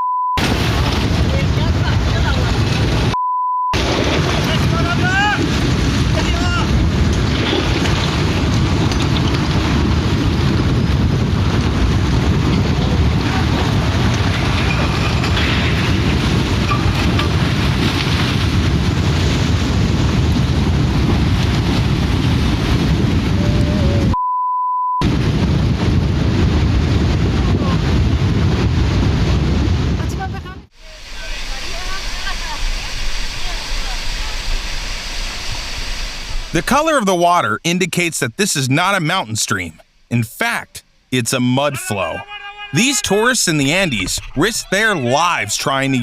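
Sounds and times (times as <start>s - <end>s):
wind buffeting the microphone: 4.0s - 24.2s, 25.0s - 36.6s.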